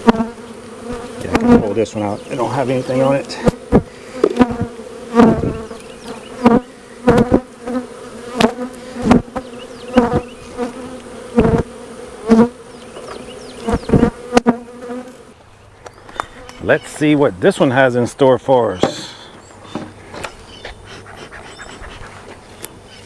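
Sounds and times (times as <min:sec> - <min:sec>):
wooden hive frames knocking: 0:00.0 - 0:14.6, 0:18.8 - 0:20.3
bees buzzing: 0:00.0 - 0:23.0.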